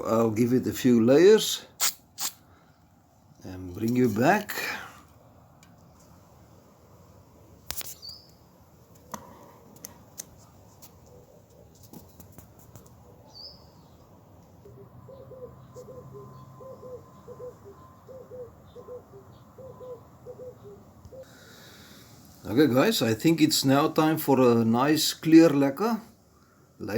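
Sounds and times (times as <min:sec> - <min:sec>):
faint bird chirps: 0:07.9 - 0:08.4, 0:13.2 - 0:22.0.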